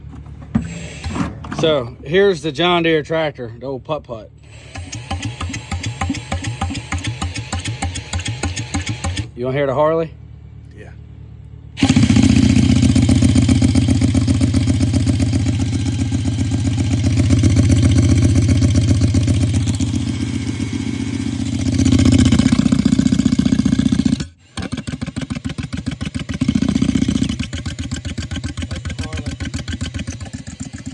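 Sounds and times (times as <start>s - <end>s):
engine running with pulsing beat: 4.5s - 9.3s, 11.7s - 30.9s.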